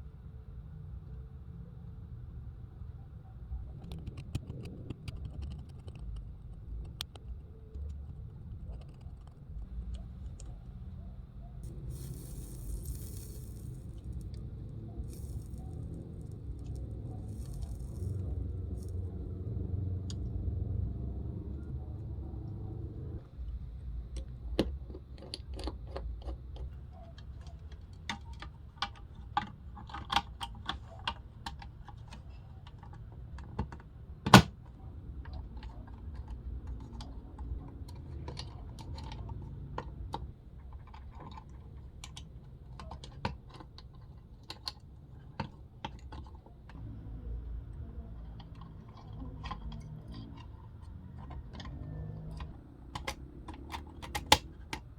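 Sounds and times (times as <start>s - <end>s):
low hum: 2.9s - 24.2s
small parts clicking: 11.6s - 20.3s.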